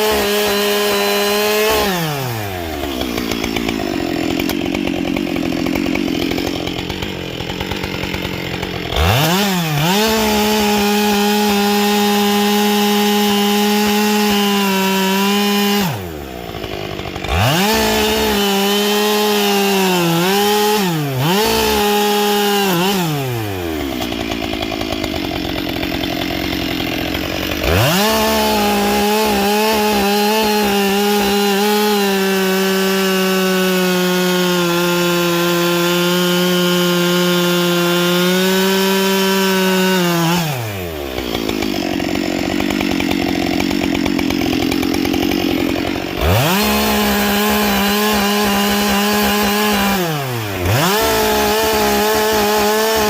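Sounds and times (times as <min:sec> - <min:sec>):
chainsaw cutting wood: 0:00.0 - 0:53.0.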